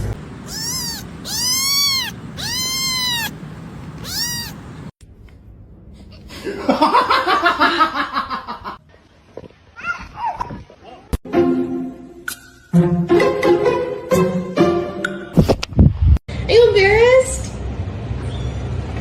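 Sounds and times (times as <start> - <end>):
cat meowing: 0.4 - 4.9.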